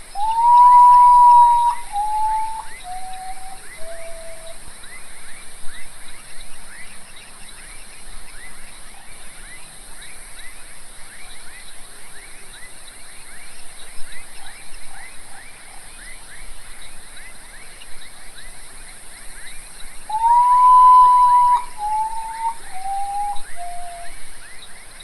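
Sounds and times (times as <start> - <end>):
bird whistled mournful song: 0.0 - 5.0, 19.3 - 25.0
high hiss: 0.0 - 6.2, 17.9 - 24.4.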